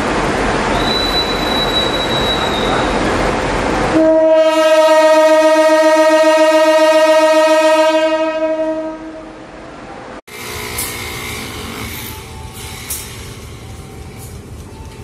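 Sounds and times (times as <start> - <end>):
train rumbling: 0.0 - 15.0
locomotive horn blast: 3.9 - 9.4.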